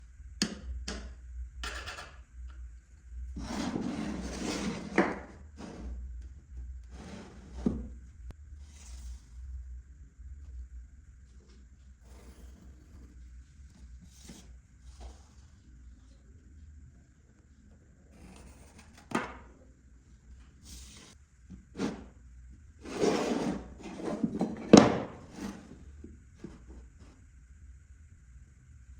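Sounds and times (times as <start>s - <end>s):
steady low hum: 0.0s - 28.9s
wood scraping and sliding: 3.4s - 6.2s, 6.9s - 8.0s, 22.8s - 25.8s.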